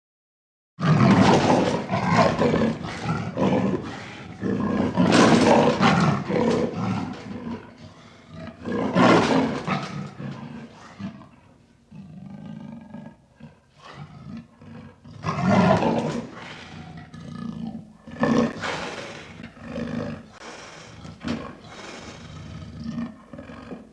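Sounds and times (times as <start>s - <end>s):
big cat growling: 0.8s - 23.9s
big cat roaring: 0.8s - 23.9s.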